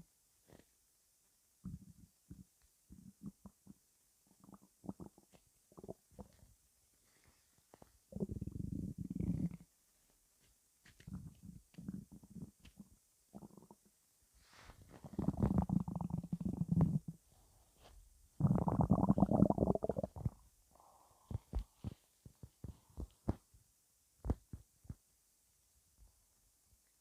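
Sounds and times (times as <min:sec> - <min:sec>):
stomach rumbling and gurgling: 0:01.6 - 0:06.5, 0:07.1 - 0:09.7, 0:11.0 - 0:13.9, 0:14.6 - 0:17.2, 0:17.8 - 0:23.5, 0:24.2 - 0:25.0.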